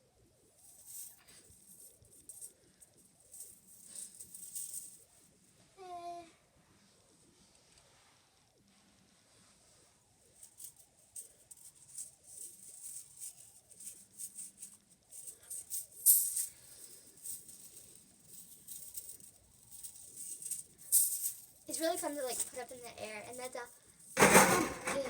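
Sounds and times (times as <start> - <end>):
pieces rattling inside fidget toy: 3.3 - 5.0, 10.4 - 25.0.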